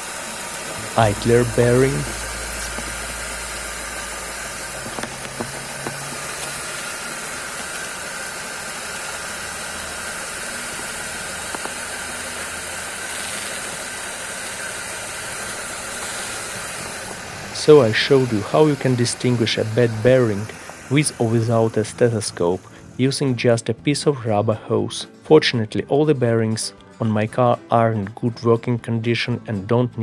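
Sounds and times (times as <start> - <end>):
car engine pulley running: 2.0 - 23.0.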